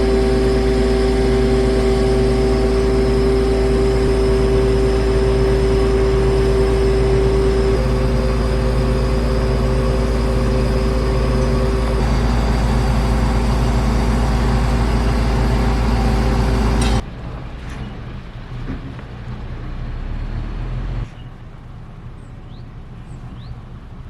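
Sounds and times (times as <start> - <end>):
heavy engine running: 0.0 - 24.0.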